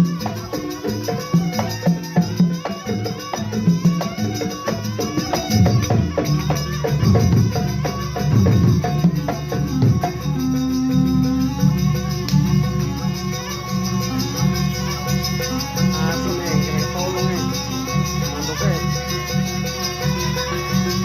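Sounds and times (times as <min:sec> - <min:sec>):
percussion ensemble playing: 0:00.0 - 0:21.0
sustained pitched tones: 0:05.1 - 0:19.1.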